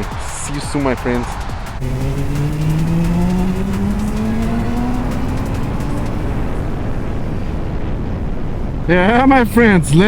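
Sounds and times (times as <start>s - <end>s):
wind and road noise: 0.0s - 10.0s
motorcycle engine accelerating: 1.8s - 7.8s.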